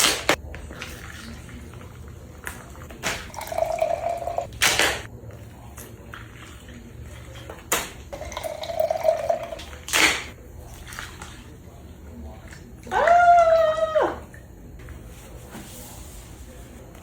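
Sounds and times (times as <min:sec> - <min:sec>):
liquid pouring into container: 0:00.6 - 0:05.0, 0:05.8 - 0:10.0.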